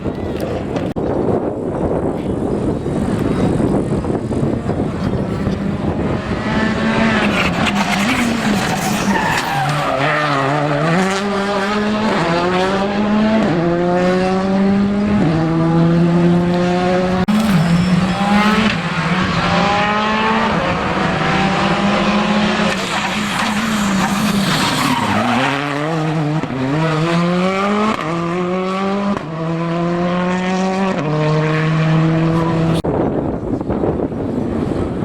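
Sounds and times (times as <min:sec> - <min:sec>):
rally car engine accelerating: 0:02.8 - 0:32.8.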